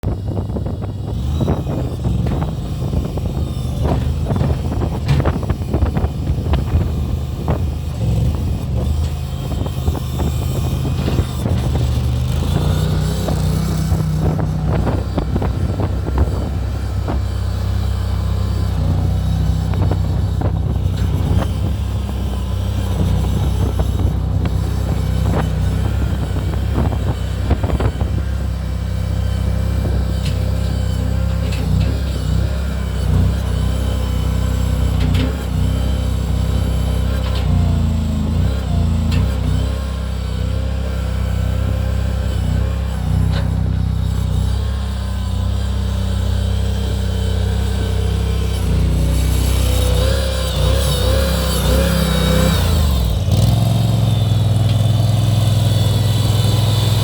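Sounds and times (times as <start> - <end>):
loader engine running: 0.0 - 57.0
metal knocks and clanks: 3.7 - 7.6.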